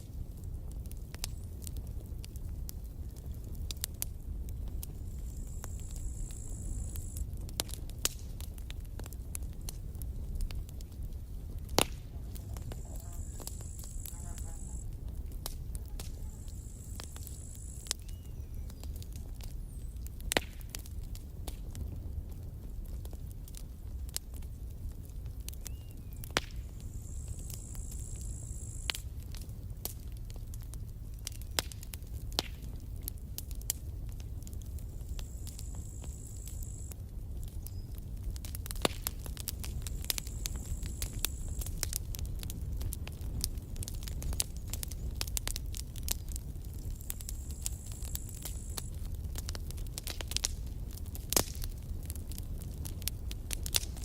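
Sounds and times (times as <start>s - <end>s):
campfire crackles and snaps: 0.0s - 54.0s
loud fire pop: 11.6s - 18.0s, 20.3s - 20.8s, 26.3s - 26.7s.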